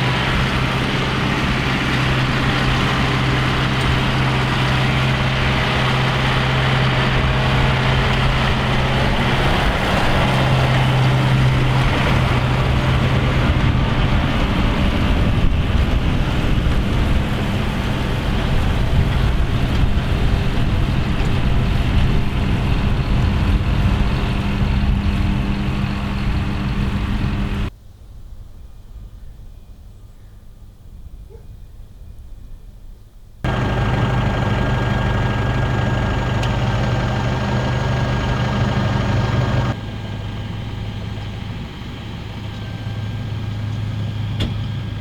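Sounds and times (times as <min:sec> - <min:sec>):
tractor engine running under load: 0:00.0 - 0:27.7, 0:33.4 - 0:45.0.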